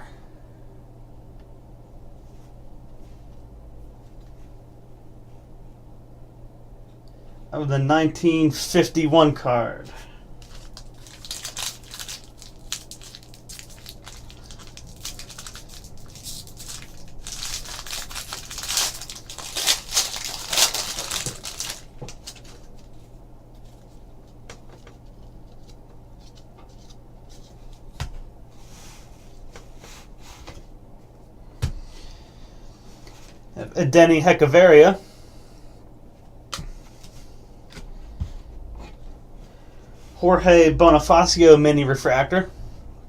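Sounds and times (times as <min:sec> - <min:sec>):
cards shuffling and clicking: 0:10.4 - 0:22.8
wrapper tearing and crinkling: 0:10.4 - 0:22.8.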